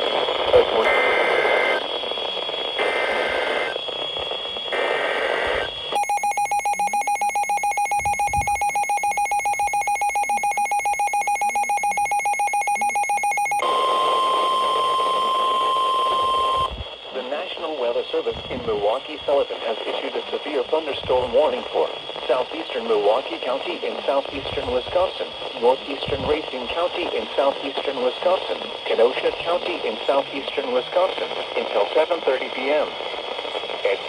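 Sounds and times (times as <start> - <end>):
radio hiss: 0.0 - 6.0, 13.6 - 34.0
buzzy data bursts: 0.6 - 3.8, 4.7 - 13.8
rapid beeping alarm tone: 0.8 - 16.7
steady attention tone: 2.6 - 17.3.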